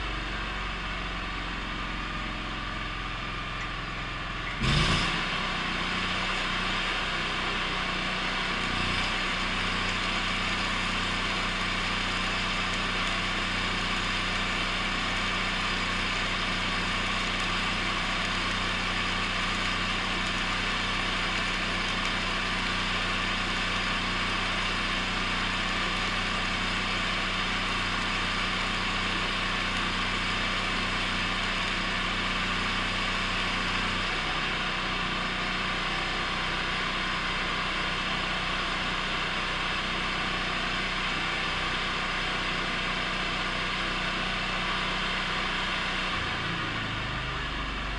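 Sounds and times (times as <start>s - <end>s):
welding machine hum: 0.0s - 47.9s
welding arc crackling: 4.6s - 34.1s.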